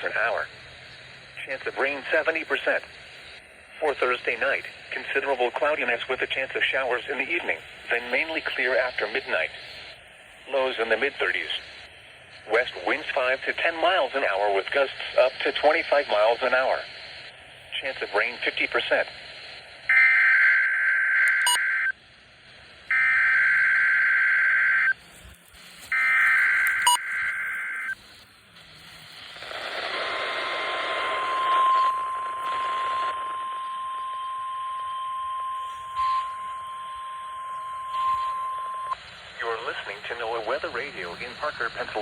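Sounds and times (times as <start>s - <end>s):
static hiss: 0.0s - 42.0s
steady alarm tone: 19.9s - 22.0s, 22.9s - 25.0s, 25.9s - 28.0s, 29.8s - 39.0s
warbling two-tone data bursts: 22.9s - 28.2s, 28.8s - 40.1s.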